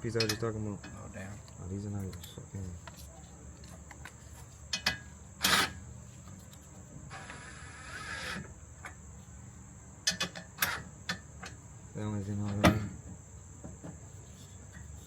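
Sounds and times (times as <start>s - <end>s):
crickets chirring: 0.0s - 15.0s.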